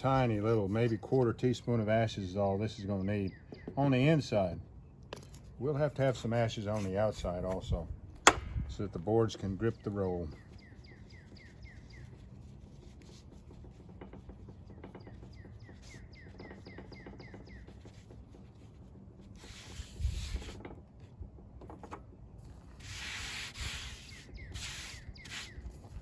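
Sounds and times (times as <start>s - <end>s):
bird chirping: 2.7s - 4.0s, 9.7s - 12.3s, 14.6s - 18.0s, 24.1s - 26.0s.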